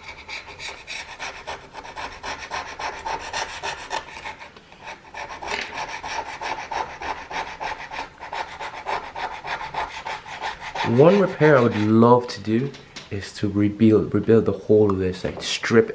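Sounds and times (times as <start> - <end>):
scraping and rubbing glue: 0.0 - 12.6.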